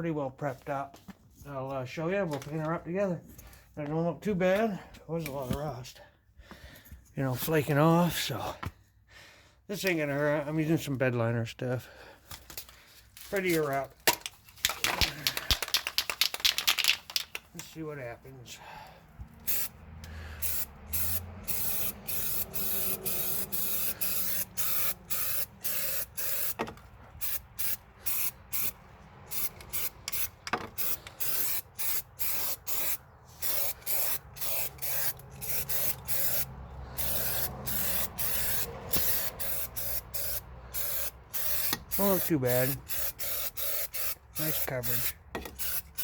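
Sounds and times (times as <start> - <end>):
spray coating hissing in bursts: 19.4 - 19.8, 20.4 - 26.6, 27.2 - 46.0.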